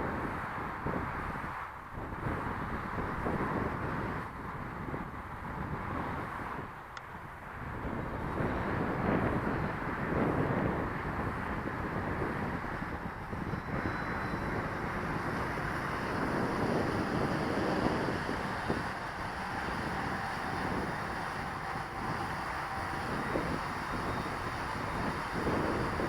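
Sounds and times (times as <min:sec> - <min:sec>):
wind buffeting microphone: 0:00.0 - 0:26.0
drone motors whining: 0:07.9 - 0:26.0.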